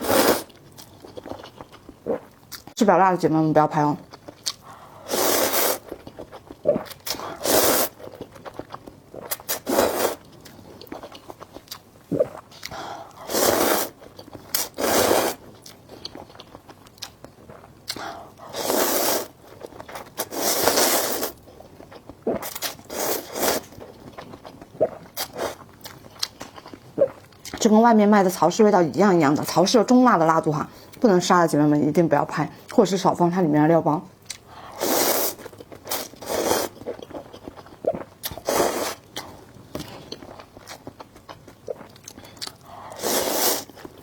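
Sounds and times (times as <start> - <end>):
loud noodle slurps: 0.0 - 0.5, 5.0 - 5.9, 6.7 - 8.0, 9.4 - 10.2, 13.2 - 14.0, 14.6 - 15.4, 18.5 - 19.4, 20.2 - 21.4, 22.4 - 23.7, 34.8 - 36.8, 38.2 - 39.1, 42.9 - 43.8
chewing and mouth clicks: 35.4 - 38.5, 39.1 - 42.8.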